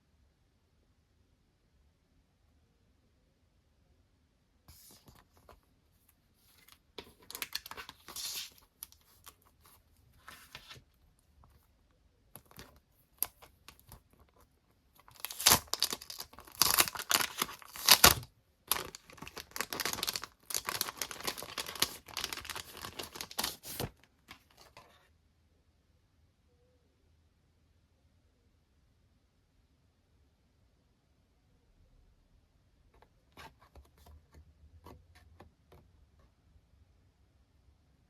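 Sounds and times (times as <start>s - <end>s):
packaging tearing and rustling: 6.6s - 9.4s, 15.0s - 24.6s.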